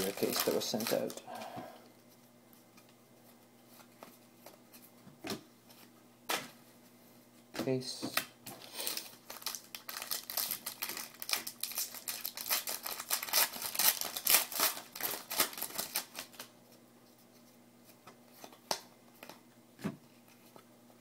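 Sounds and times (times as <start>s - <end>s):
card packs crinkling and clicking: 0.0s - 1.4s, 8.1s - 16.5s.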